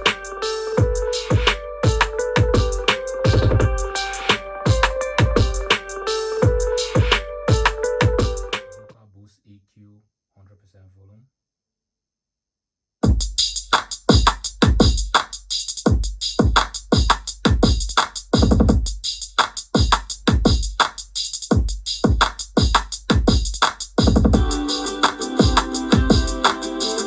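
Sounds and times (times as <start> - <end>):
electronic music with drum beat: 0.0 - 8.9, 13.0 - 27.0
synth chords: 0.0 - 8.9, 24.4 - 27.0.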